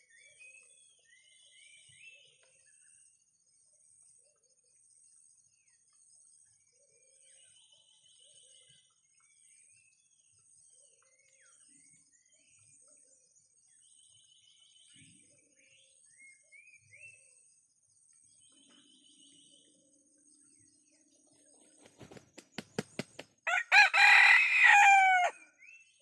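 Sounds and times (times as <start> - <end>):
bird chirps and trills: 13.7 - 23.5.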